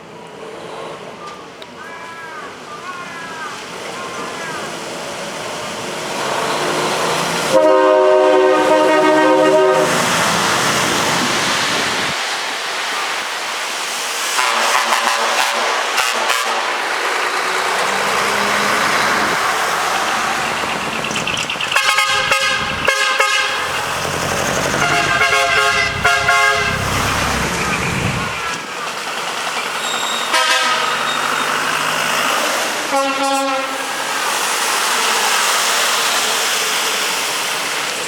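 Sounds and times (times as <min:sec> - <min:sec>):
truck engines and exhausts: 0:00.0 - 0:01.8, 0:04.7 - 0:38.0
truck air horns: 0:07.5 - 0:10.8, 0:14.4 - 0:20.8, 0:21.7 - 0:27.5, 0:28.2 - 0:28.8, 0:29.8 - 0:31.7, 0:32.8 - 0:34.0.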